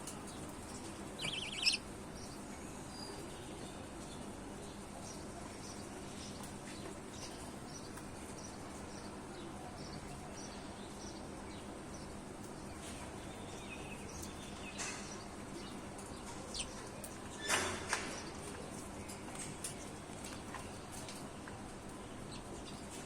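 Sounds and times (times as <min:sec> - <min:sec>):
parrots chirping: 0:01.2 - 0:01.8.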